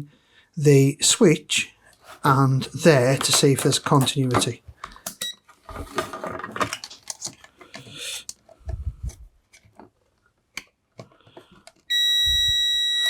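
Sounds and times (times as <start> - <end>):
metal and plastic parts clicking: 3.1 - 11.9.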